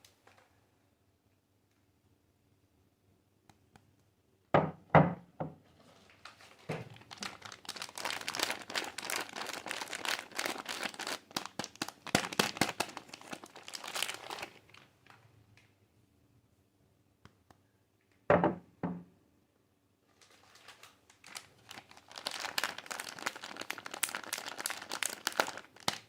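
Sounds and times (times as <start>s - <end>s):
wrapper crinkling: 6.0s - 15.2s, 20.2s - 26.0s.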